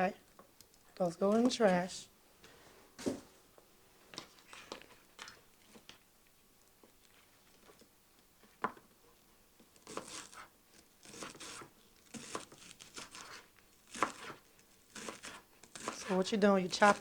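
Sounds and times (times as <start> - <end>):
knife cutting scallions on board: 9.9 - 10.5, 11.1 - 17.0.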